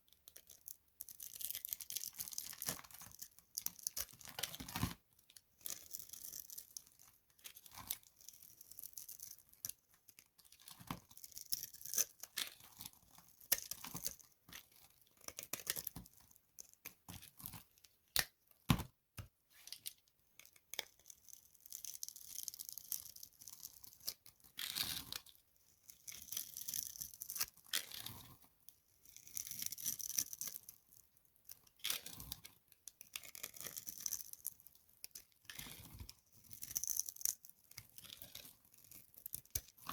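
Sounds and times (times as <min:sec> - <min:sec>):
dry soap crunching: 0:00.3 - 0:04.8, 0:29.0 - 0:39.9.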